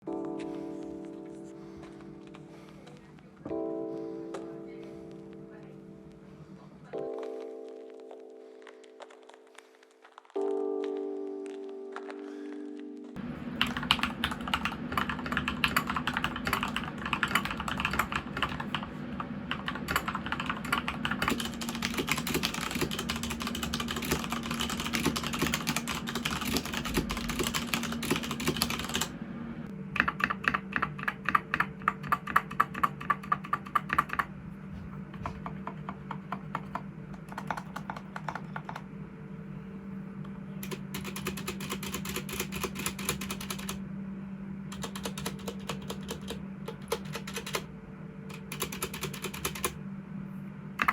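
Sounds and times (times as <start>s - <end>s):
typing on mechanical keyboard: 13.6s - 18.9s, 19.5s - 29.1s, 30.0s - 34.3s, 35.2s - 38.8s, 40.6s - 43.8s, 44.7s - 47.7s, 48.3s - 49.8s.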